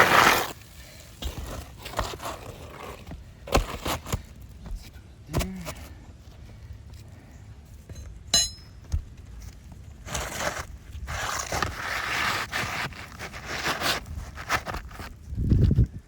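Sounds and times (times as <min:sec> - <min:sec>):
scraping and rustling on roof: 0:00.0 - 0:07.2, 0:09.3 - 0:15.8
sharp metallic clink: 0:08.3 - 0:08.8.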